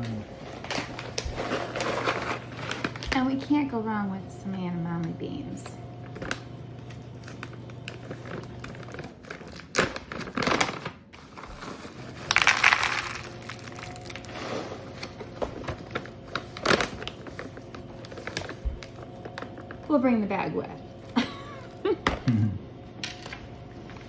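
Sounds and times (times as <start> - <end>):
clicks and knocks of plastic: 6.2 - 11.0
beans clattering into plastic box: 12.2 - 14.3.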